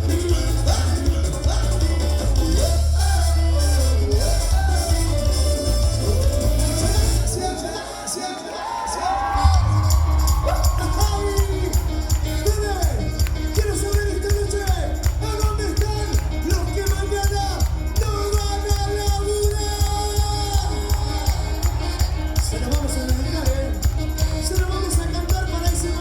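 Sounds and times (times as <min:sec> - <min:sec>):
tambourine: 0:00.0 - 0:07.5, 0:09.4 - 0:26.0
person singing: 0:00.0 - 0:14.6
crowd noise: 0:00.0 - 0:26.0
live band playing latin dance music: 0:00.0 - 0:26.0.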